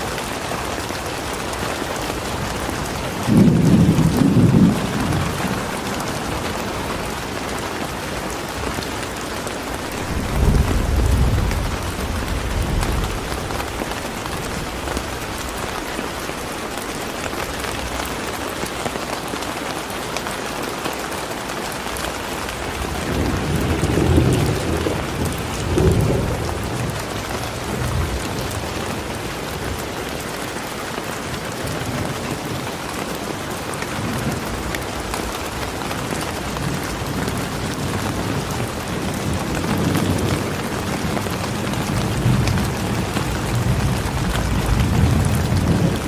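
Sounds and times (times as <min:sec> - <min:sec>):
steady rain falling: 0:00.0 - 0:46.0
low rumble of thunder: 0:02.1 - 0:07.4, 0:09.7 - 0:18.9, 0:22.5 - 0:29.8, 0:34.0 - 0:46.0.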